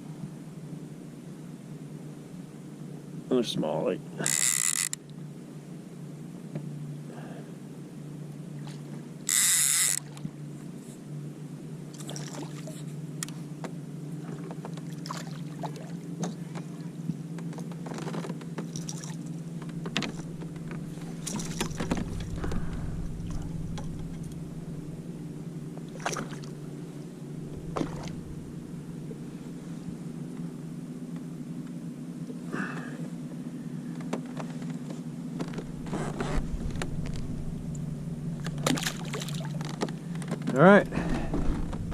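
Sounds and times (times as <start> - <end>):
boat engine hum: 0.0 - 41.9
water splashes: 11.9 - 12.8, 14.8 - 16.9, 18.7 - 19.3, 20.1 - 26.7, 27.4 - 29.5, 37.2 - 39.8.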